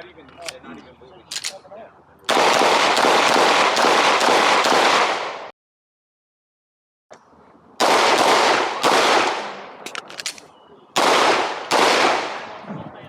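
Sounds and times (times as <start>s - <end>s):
pistol shots with ringing echo: 2.3s - 5.5s, 7.8s - 9.8s, 11.0s - 12.7s.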